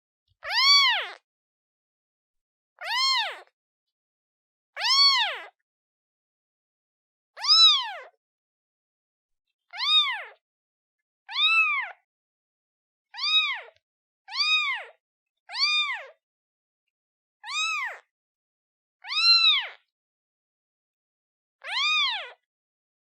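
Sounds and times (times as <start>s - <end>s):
kitten meowing: 0.4s - 1.2s, 2.8s - 3.5s, 4.8s - 5.6s, 7.4s - 8.1s, 9.8s - 10.4s, 11.3s - 12.0s, 13.2s - 14.9s, 15.5s - 16.1s, 17.4s - 18.0s, 19.0s - 19.8s, 21.7s - 22.4s.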